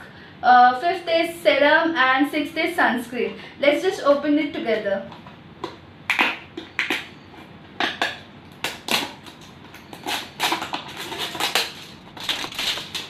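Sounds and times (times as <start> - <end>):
packaging crinkling and clicking: 8.0 - 13.0.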